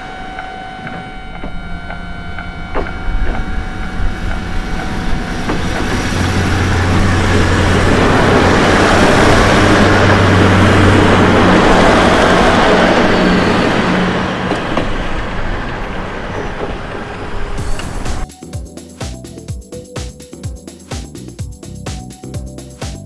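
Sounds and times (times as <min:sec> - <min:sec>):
train wheel noise: 0:00.0 - 0:18.3
diesel engine drone: 0:00.0 - 0:18.4
level crossing warning bell: 0:00.0 - 0:20.0.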